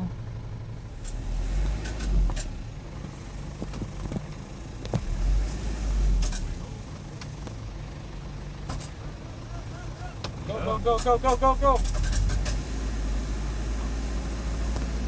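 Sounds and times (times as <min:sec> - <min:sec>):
car engine running: 0:00.0 - 0:15.0
low rumbles: 0:00.0 - 0:15.0
road noise: 0:00.0 - 0:15.0.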